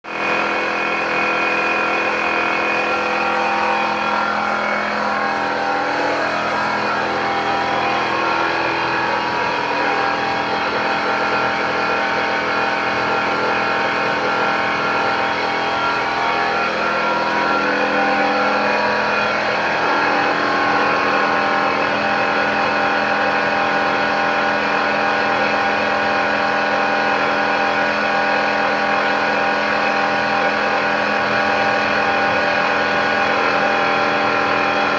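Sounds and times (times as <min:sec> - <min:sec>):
motor humming: 0:00.1 - 0:26.8.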